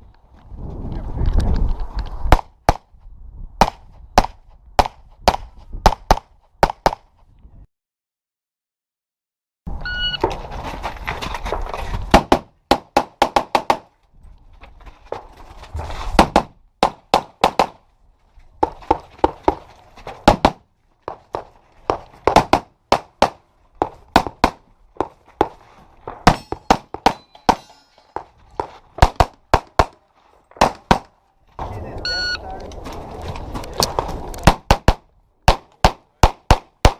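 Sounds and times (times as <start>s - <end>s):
wind on microphone: 0.0s - 2.3s, 2.9s - 6.1s.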